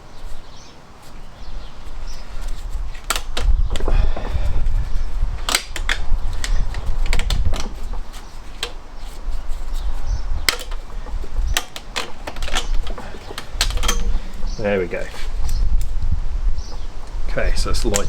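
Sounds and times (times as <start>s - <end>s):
clicks and knocks of hand tools: 2.5s - 4.5s, 5.4s - 14.4s.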